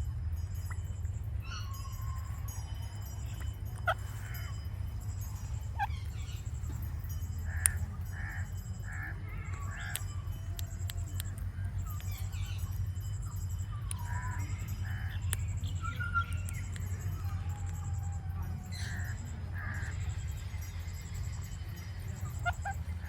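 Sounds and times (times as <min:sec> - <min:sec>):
steady low rumble: 0:00.0 - 0:23.0
parakeet clicking: 0:03.3 - 0:21.2.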